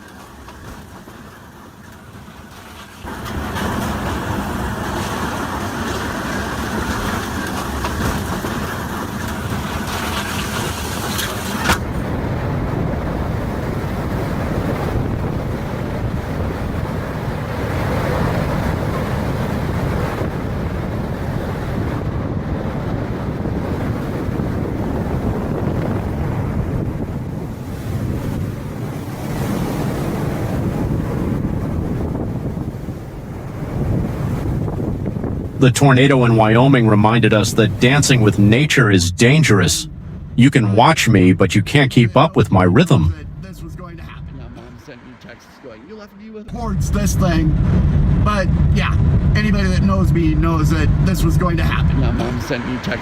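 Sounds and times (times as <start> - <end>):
storm wind buffeting microphone: 11.8 - 35.6, 46.5 - 53.0.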